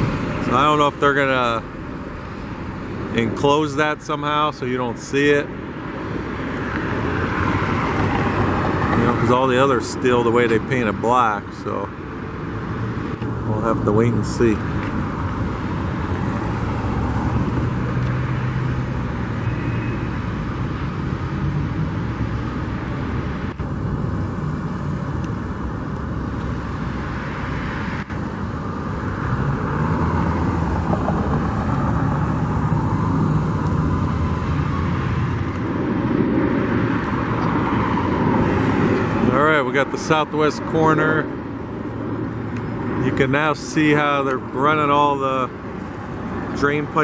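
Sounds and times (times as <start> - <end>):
road noise: 0.0 - 47.0
low engine hum: 12.5 - 19.2, 20.4 - 40.0.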